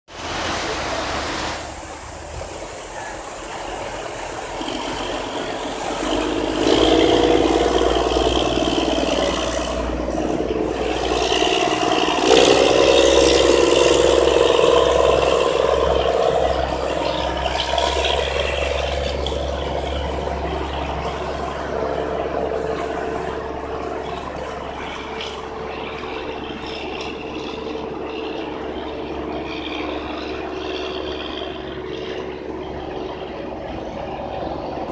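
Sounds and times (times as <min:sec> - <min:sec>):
boat engine running: 0:00.1 - 0:34.9.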